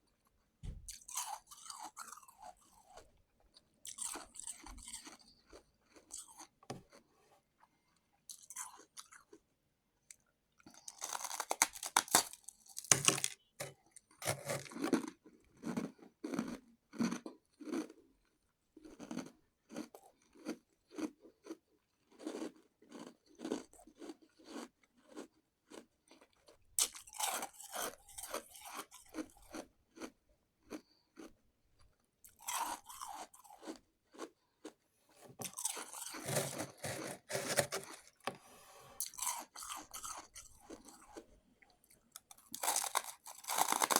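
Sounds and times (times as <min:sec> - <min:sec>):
rhythmic chewing: 0:00.2 - 0:07.0, 0:32.2 - 0:43.9
ice crunching: 0:10.9 - 0:13.4, 0:35.4 - 0:38.3, 0:42.5 - 0:43.9.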